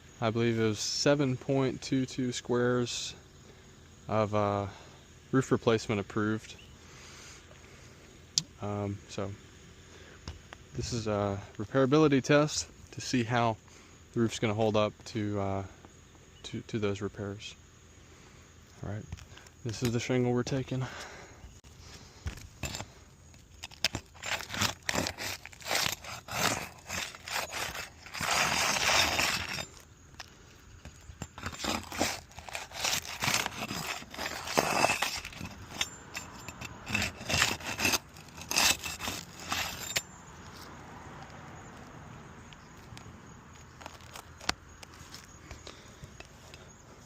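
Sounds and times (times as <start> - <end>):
faint background noise: 0.0 - 47.0
roof shingle scraping and crackling: 20.9 - 40.7, 42.8 - 47.0.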